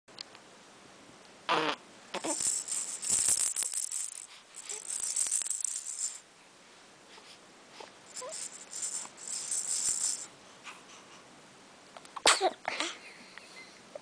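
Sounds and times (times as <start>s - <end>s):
toy rattle shaken: 2.2s - 6.2s, 8.1s - 10.3s.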